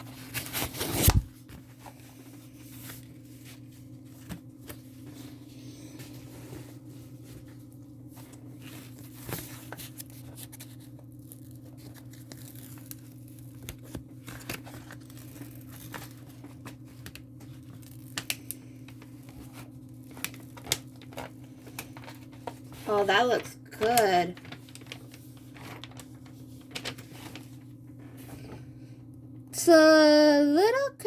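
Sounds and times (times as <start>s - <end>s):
packaging rustling: 6.1s - 28.5s.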